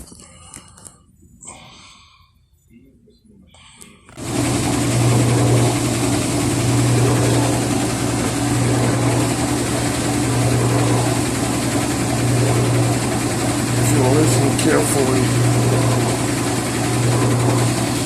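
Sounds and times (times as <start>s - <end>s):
washing machine humming and whirring: 4.1s - 18.0s.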